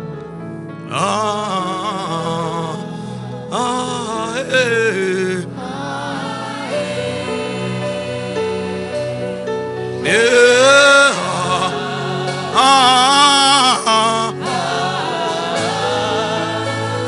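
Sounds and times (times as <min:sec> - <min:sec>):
sustained keyboard chords: 0:00.0 - 0:17.0
person singing long held notes: 0:00.9 - 0:09.3.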